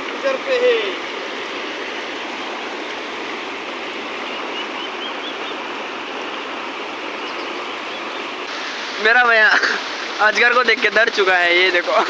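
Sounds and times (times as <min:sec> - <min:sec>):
river water rushing: 0:00.0 - 0:12.0.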